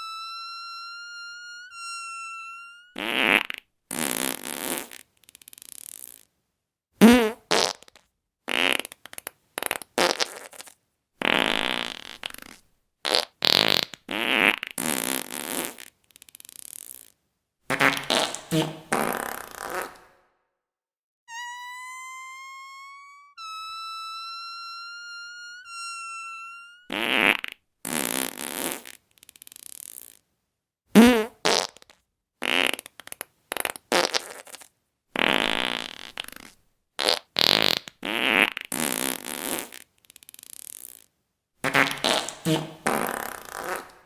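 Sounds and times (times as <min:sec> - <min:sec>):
whistle-like tone: 0:00.0 - 0:03.0, 0:21.3 - 0:26.9
fart sounds: 0:03.0 - 0:06.3, 0:07.0 - 0:20.2, 0:26.7 - 0:30.2, 0:31.0 - 0:44.0.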